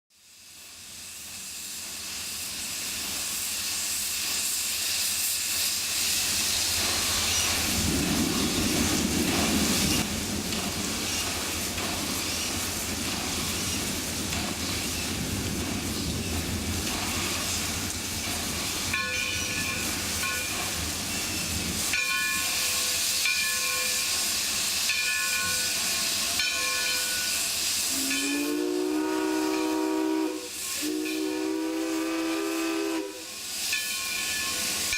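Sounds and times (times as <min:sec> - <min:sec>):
steam locomotive hissing: 0:00.1 - 0:34.9
steam whistle rising in pitch: 0:27.9 - 0:33.4.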